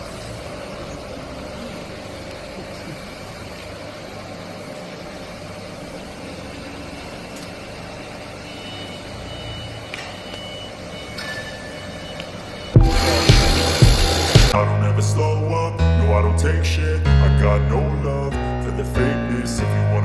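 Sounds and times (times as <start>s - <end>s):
slicing machine humming: 12.8s - 14.6s.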